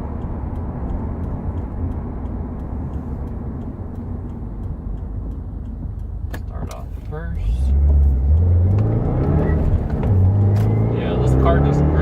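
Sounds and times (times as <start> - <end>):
faint ticks: 0.0 - 8.9
car engine low rumble: 0.0 - 12.0.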